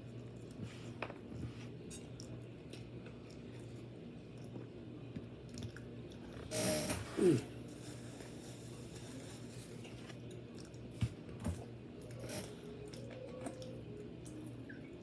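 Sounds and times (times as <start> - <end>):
person chewing food: 0.0 - 4.7.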